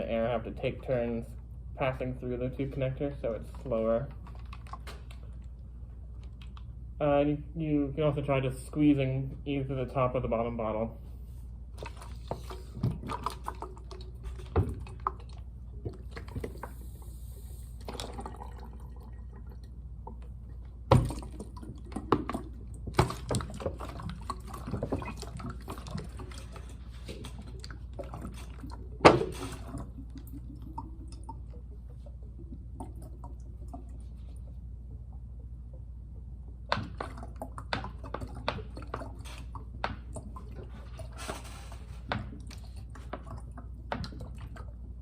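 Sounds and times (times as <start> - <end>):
water gurgling and dripping: 11.7 - 45.0
small splashes: 11.8 - 34.7.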